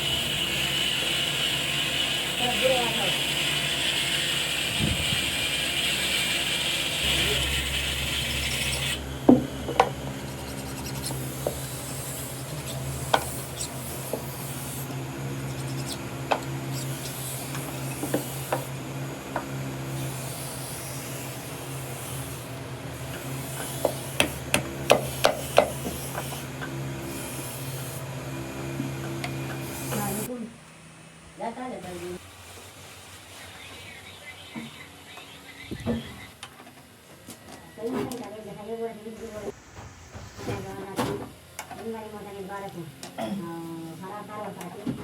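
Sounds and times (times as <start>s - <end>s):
rasping strokes on wood: 0.0s - 9.0s, 9.7s - 18.8s, 19.4s - 28.0s
steady low hum: 3.9s - 23.5s.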